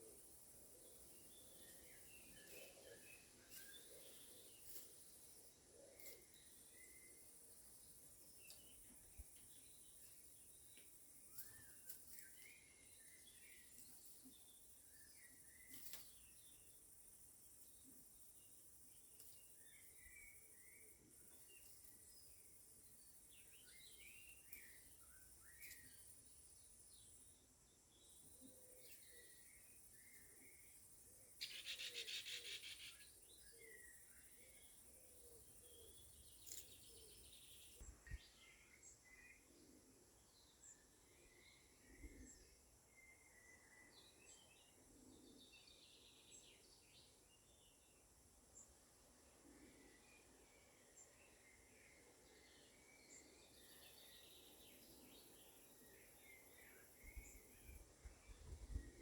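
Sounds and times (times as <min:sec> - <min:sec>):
birds chirping: 0:00.0 - 0:16.8, 0:17.6 - 0:39.5.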